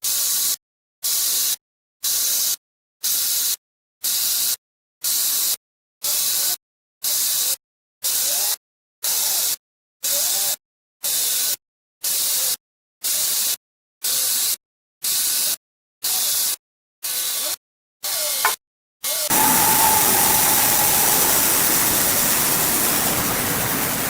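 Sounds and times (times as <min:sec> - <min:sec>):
bursts of static-like hiss: 0:19.3 - 0:24.0.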